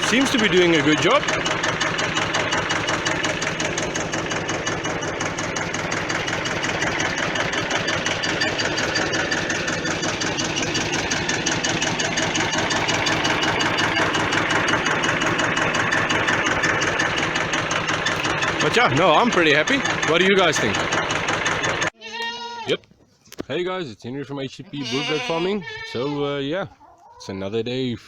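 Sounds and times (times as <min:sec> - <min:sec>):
sickle bar mower clattering: 0:00.0 - 0:21.9
tractor engine running: 0:00.0 - 0:22.0.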